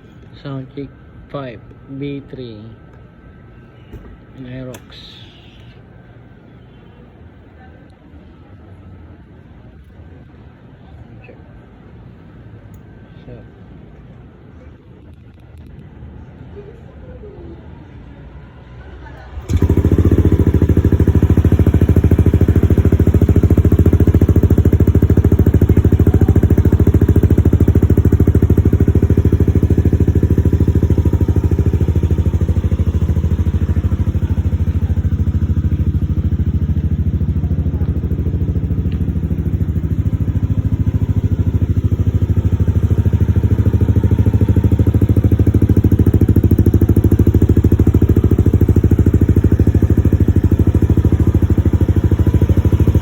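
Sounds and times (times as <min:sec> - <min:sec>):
scooter engine running: 0:19.3 - 0:53.0.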